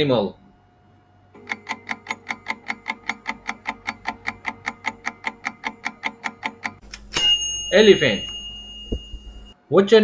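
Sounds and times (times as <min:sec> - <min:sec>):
rapid clock ticks: 0:01.4 - 0:06.8.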